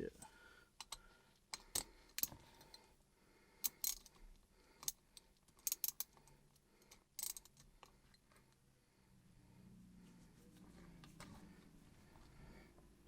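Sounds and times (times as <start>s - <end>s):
wrench clicking on metal: 5.6s - 6.2s, 7.2s - 7.7s.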